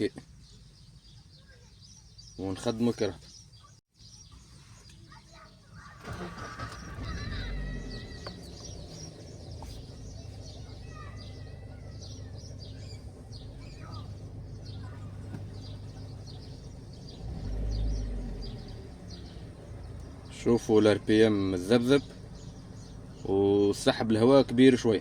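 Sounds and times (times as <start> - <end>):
car engine idling unevenly: 5.8 - 25.0
car engine starting: 5.8 - 25.0.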